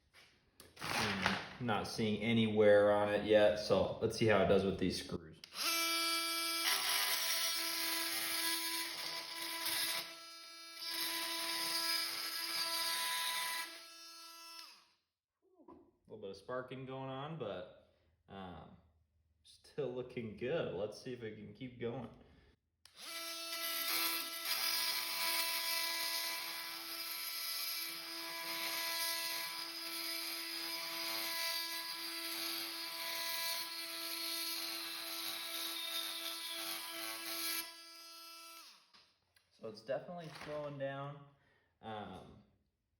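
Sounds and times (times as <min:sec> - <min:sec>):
multi-tool cutting screws: 0:00.6 - 0:01.4, 0:05.4 - 0:14.9, 0:22.9 - 0:39.1.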